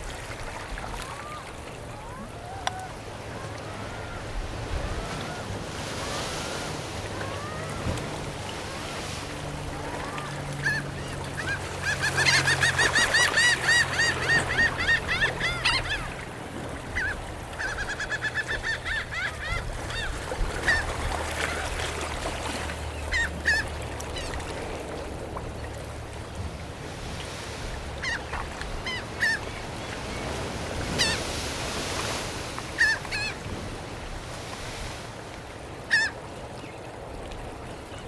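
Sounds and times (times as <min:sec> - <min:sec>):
surf and wind: 0:00.0 - 0:38.0
seagulls squawking: 0:01.0 - 0:21.7, 0:22.9 - 0:24.4, 0:27.9 - 0:31.4, 0:32.7 - 0:33.4, 0:35.9 - 0:36.2.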